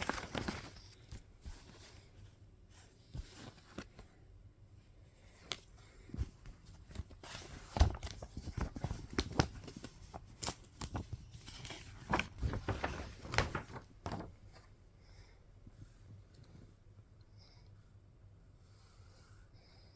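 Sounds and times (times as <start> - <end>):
paper and plastic rustling: 0.0 - 2.0, 6.2 - 14.7.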